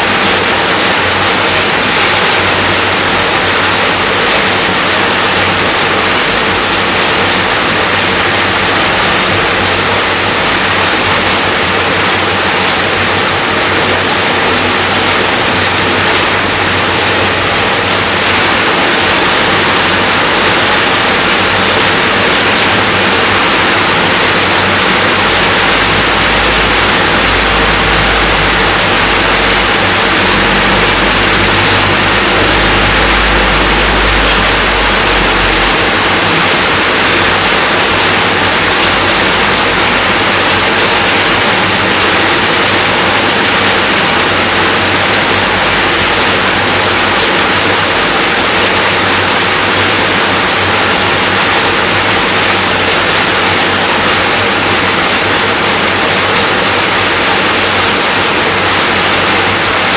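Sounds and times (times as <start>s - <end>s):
heavy rainfall: 0.0s - 59.9s
low rumble: 25.1s - 37.5s.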